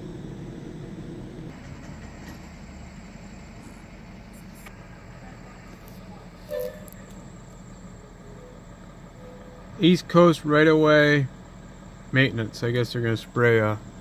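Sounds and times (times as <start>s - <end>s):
train rumbling: 0.0s - 14.0s
train squeal: 6.4s - 7.2s, 7.9s - 9.8s.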